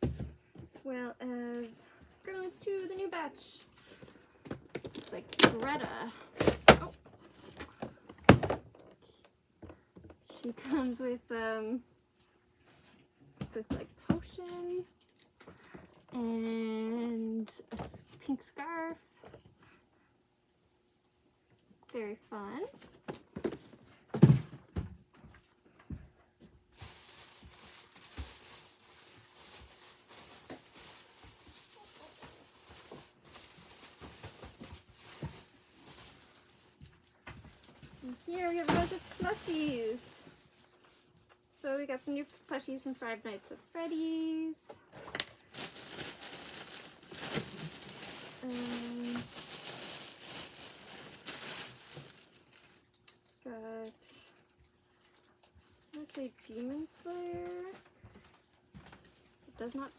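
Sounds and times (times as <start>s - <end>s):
packaging rustling: 4.7s - 8.6s, 26.8s - 36.8s, 37.5s - 40.6s, 45.0s - 52.9s.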